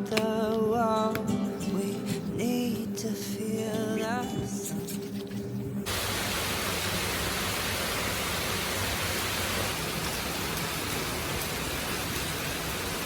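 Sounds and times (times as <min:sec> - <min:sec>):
heavy rain falling: 0:05.9 - 0:13.0.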